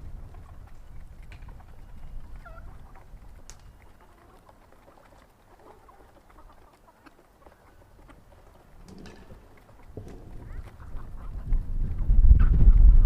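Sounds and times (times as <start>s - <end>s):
chickens clucking faintly: 0.0s - 13.0s.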